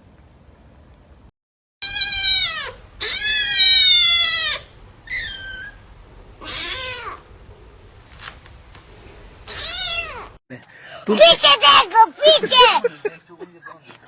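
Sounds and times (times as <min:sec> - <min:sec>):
small animal crying out: 0:01.8 - 0:05.8, 0:06.4 - 0:07.3, 0:09.5 - 0:10.4.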